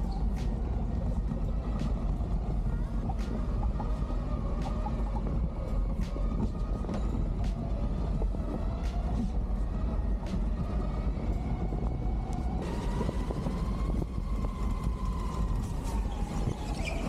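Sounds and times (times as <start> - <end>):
vehicle rumble: 0.0 - 17.0.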